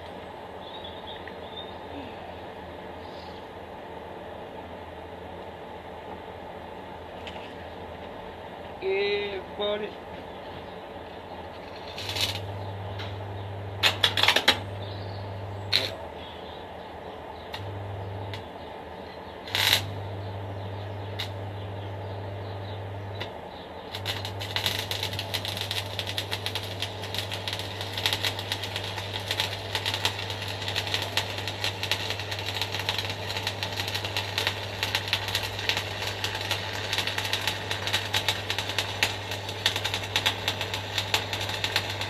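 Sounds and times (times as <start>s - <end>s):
arc welding crackle: 8.8s - 16.5s, 17.2s - 42.0s
low hum: 10.1s - 42.0s.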